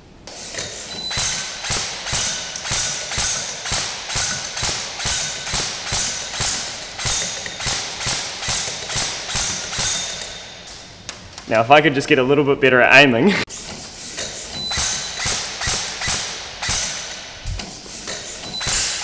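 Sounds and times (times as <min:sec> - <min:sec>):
airsoft rifle firing single shots: 0:01.1 - 0:10.8, 0:14.7 - 0:17.4, 0:18.6 - 0:19.0.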